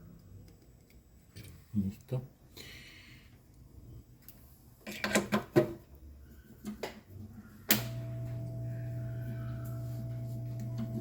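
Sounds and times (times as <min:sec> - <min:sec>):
blower humming: 0:07.7 - 0:11.0.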